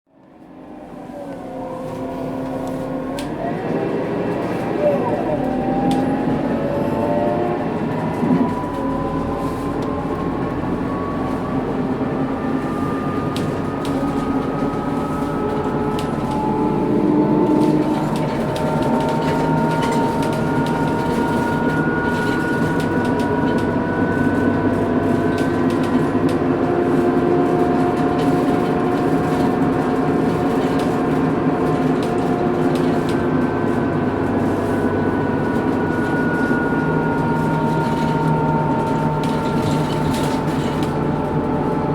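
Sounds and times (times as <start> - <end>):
bus diesel engine running: 0.1 - 41.9
differential whine: 4.8 - 27.2.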